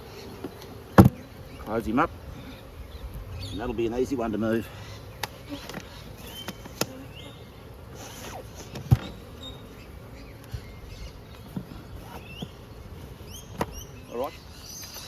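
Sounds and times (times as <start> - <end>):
honey bees buzzing: 0.0 - 15.0
wooden hive boxes knocking: 0.1 - 7.1, 8.4 - 15.0
bird chirps: 8.7 - 15.0.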